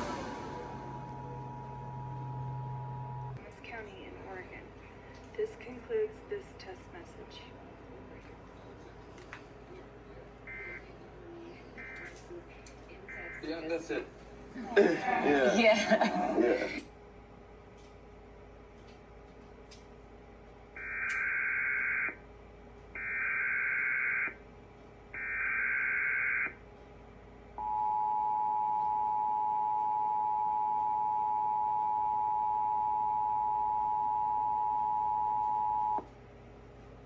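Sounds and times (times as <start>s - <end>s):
two-tone attention signal: 0.0s - 3.4s, 27.6s - 36.0s
modem-like data bursts: 0.7s - 3.4s, 20.8s - 22.2s, 25.2s - 26.6s, 27.6s - 36.0s.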